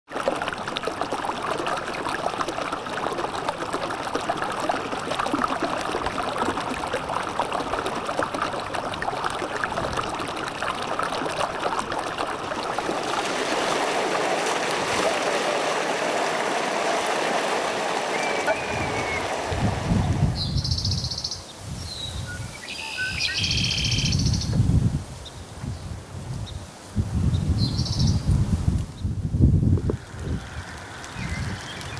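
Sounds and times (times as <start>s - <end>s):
stream of running water: 0.1s - 31.9s
birds chirping: 15.2s - 21.4s, 22.4s - 24.4s, 30.2s - 31.9s.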